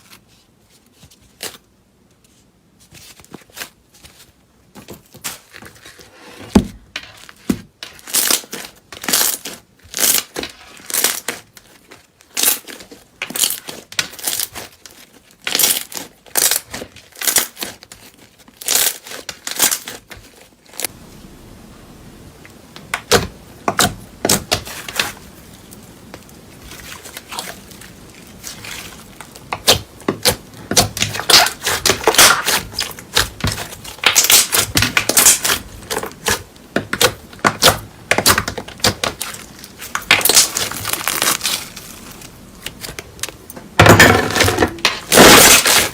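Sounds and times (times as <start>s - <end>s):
slime crackling and popping: 7.9s - 20.9s, 22.8s - 45.9s.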